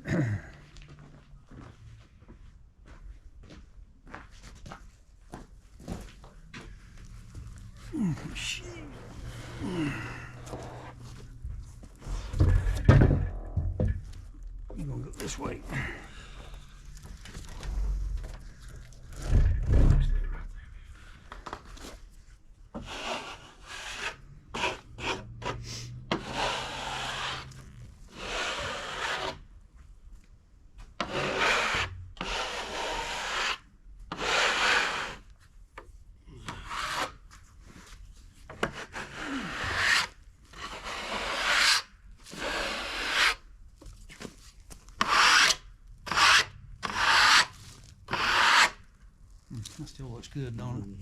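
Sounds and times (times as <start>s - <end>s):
brush rubbing over wood boards: 6.8s - 13.6s, 22.8s - 29.4s, 45.0s - 48.8s.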